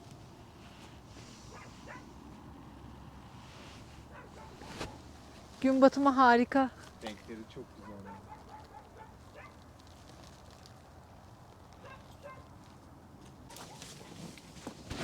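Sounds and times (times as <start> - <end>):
rustling: 0.0 - 2.5, 3.2 - 15.0
faint animal calls: 7.7 - 9.6.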